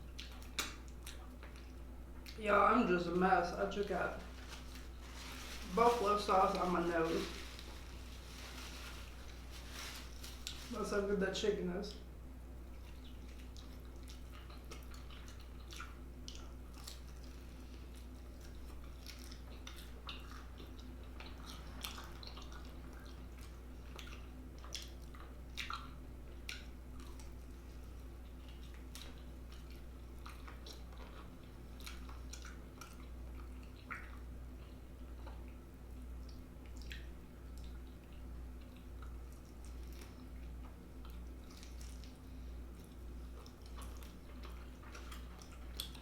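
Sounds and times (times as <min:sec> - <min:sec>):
person chewing: 0:00.0 - 0:02.4, 0:12.6 - 0:46.0
wet mouth clicks and smacks: 0:00.1 - 0:02.4, 0:36.2 - 0:40.1.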